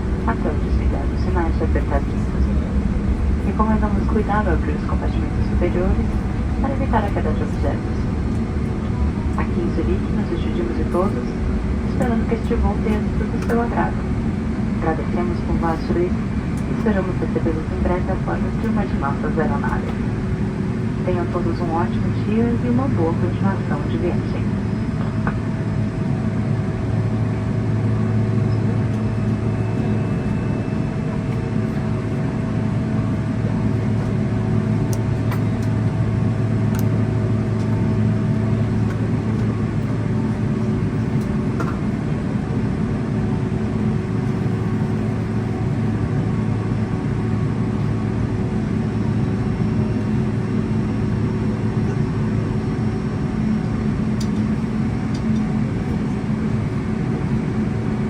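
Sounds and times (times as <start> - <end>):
airplane cabin hum: 0.0 - 58.0
faint steady whine: 0.0 - 58.0.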